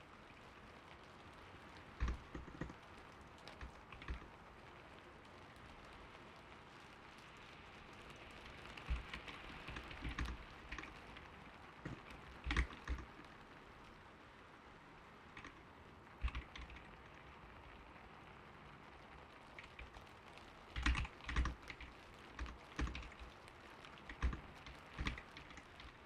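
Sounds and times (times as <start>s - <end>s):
gentle rain: 0.0s - 26.0s
keyboard typing: 8.9s - 10.9s, 11.9s - 13.1s, 16.2s - 16.9s, 20.8s - 23.2s, 24.0s - 25.7s.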